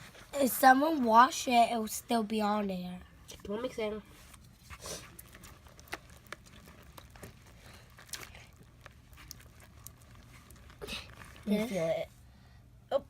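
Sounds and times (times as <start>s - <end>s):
slime clicking and squishing: 4.4s - 12.1s.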